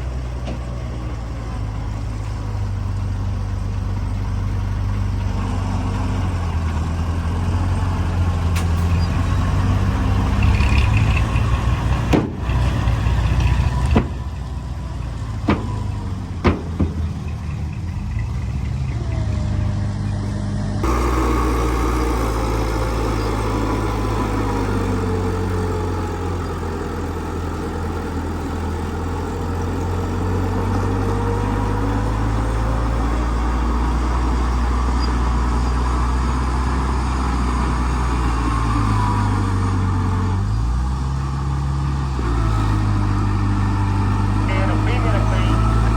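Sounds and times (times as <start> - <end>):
heavy machinery engines droning: 0.0 - 45.9
sharp knocks: 12.1 - 12.6, 15.4 - 17.1.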